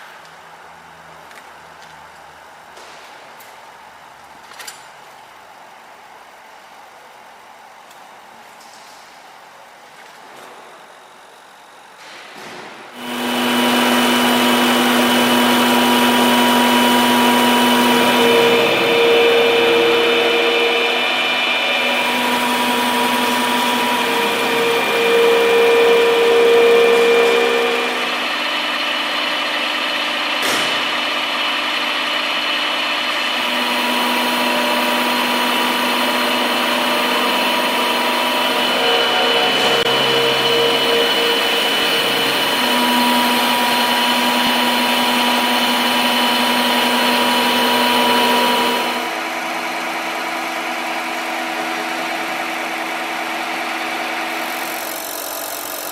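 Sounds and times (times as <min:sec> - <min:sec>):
milling machine whine: 0:13.0 - 0:55.9.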